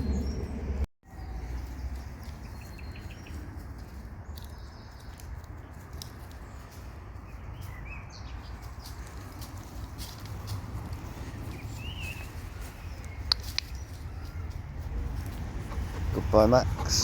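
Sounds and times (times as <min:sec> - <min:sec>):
steady low rumble: 0:08.6 - 0:17.0.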